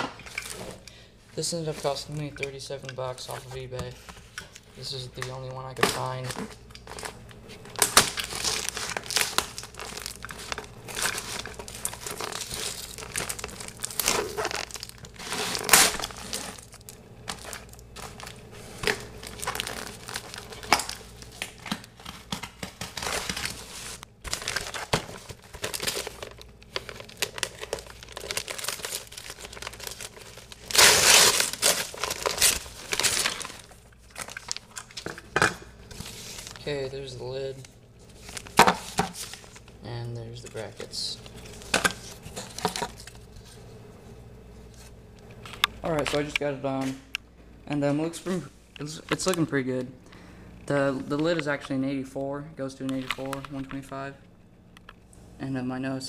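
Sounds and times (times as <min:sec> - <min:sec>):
packaging tearing and crinkling: 0:05.1 - 0:36.8, 0:37.5 - 0:39.7, 0:40.4 - 0:43.2.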